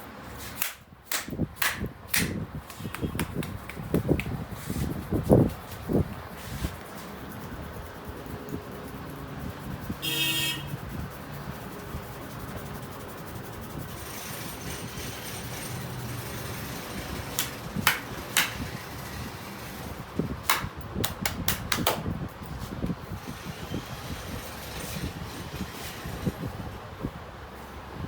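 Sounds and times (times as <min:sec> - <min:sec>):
street noise: 0:00.0 - 0:28.0
hand slaps on head: 0:00.6 - 0:04.4, 0:20.5 - 0:22.1.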